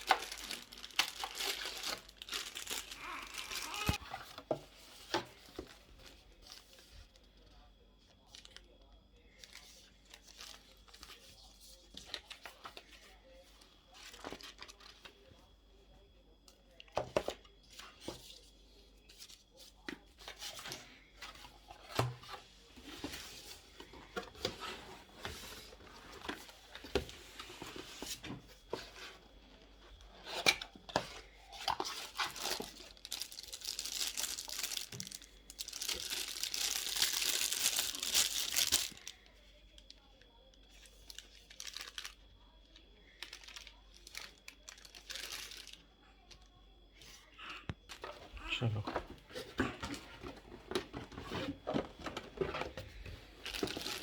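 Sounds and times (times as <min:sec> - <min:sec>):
packaging tearing: 0:00.0 - 0:04.0, 0:32.2 - 0:39.0
packaging rustling and crinkling: 0:00.0 - 0:06.9, 0:30.0 - 0:39.3, 0:40.7 - 0:42.2, 0:43.2 - 0:45.8, 0:48.7 - 0:54.0.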